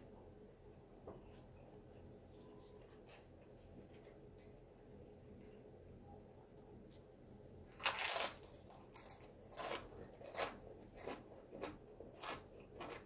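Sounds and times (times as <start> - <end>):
crunching of chips being chewed: 7.8 - 13.0.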